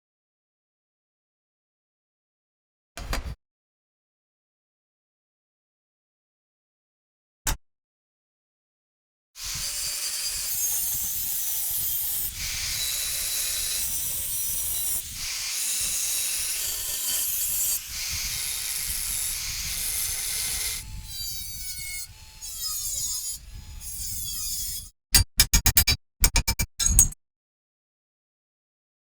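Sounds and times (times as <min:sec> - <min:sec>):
tool scraping a workpiece: 0:09.4 - 0:27.2.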